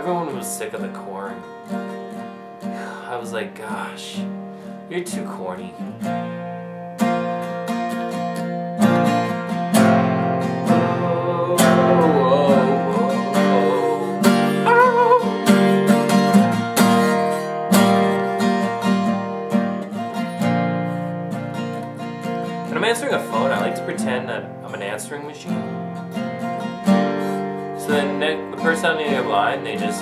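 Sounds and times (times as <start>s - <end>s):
acoustic guitar strumming: 0.0s - 30.0s
wordless voice wavering: 10.7s - 15.4s.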